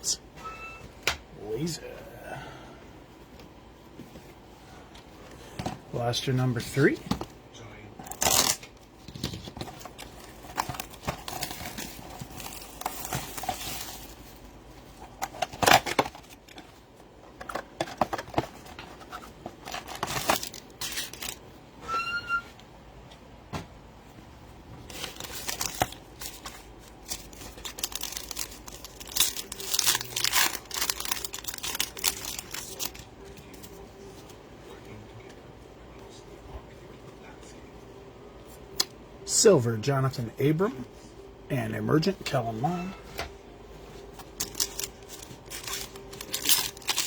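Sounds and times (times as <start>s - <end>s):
wrappers tearing and crinkling: 8.1s - 14.4s, 19.5s - 21.4s, 24.9s - 33.1s, 44.2s - 47.0s.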